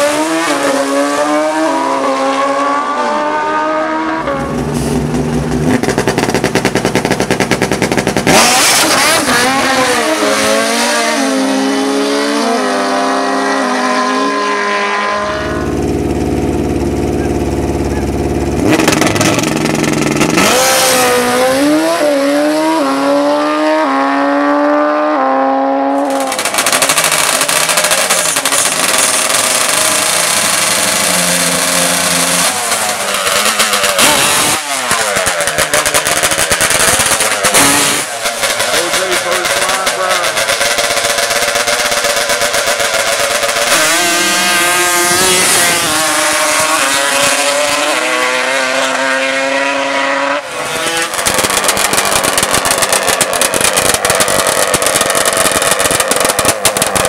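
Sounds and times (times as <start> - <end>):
drag racing engines accelerating: 0.0 - 57.0
dense rough engine noise: 4.2 - 10.6, 15.1 - 21.8, 26.0 - 49.0, 50.4 - 57.0
steady low engine note: 15.2 - 20.4.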